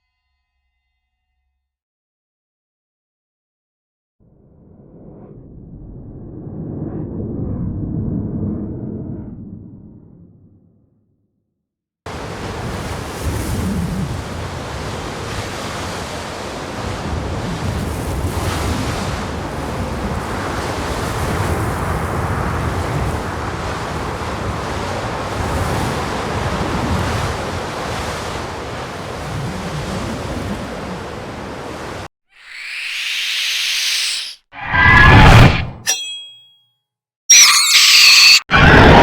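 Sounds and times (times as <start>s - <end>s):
brief high hiss: 32.4s - 35.5s.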